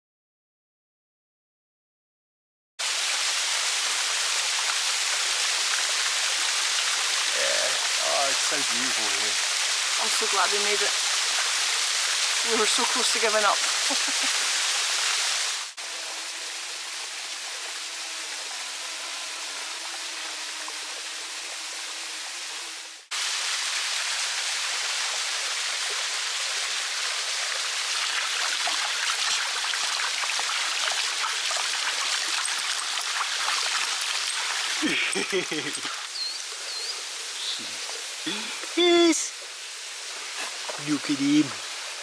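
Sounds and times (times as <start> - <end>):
waterfall rushing: 2.8 - 15.8, 26.9 - 42.0.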